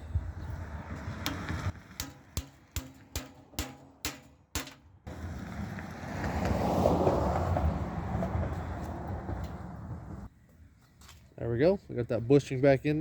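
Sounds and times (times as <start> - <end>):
hammer blows ringing on metal: 2.0 - 5.0.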